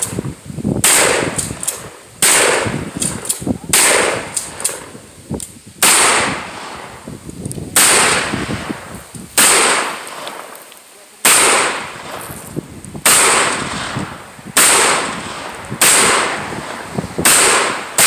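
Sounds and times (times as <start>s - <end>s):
loud gunshots with echo: 0.8s - 5.0s, 5.8s - 7.1s, 7.8s - 8.8s, 9.4s - 10.5s, 11.2s - 12.4s, 13.0s - 18.0s.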